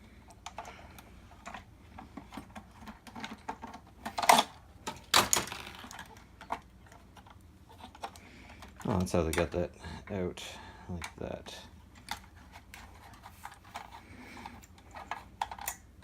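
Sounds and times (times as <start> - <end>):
plastic parts clicking and rattling: 0.1 - 9.6, 10.9 - 16.0
loud plastic clacks: 1.4 - 9.4.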